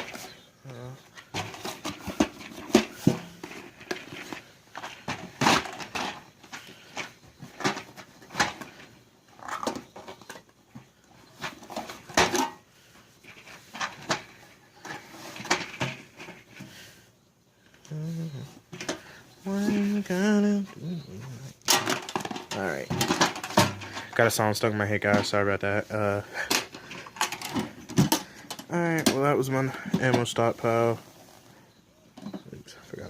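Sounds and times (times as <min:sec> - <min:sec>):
cartridges clinking and rattling: 0:21.6 - 0:25.5, 0:26.2 - 0:30.4.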